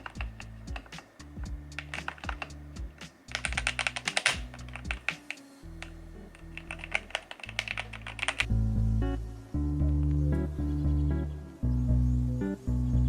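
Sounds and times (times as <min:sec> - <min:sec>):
keyboard key clacks: 0:00.0 - 0:08.5
background music with low bass: 0:00.0 - 0:13.0.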